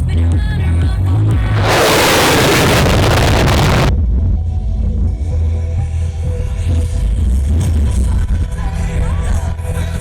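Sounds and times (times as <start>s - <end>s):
heavy low rumble: 1.0s - 4.4s.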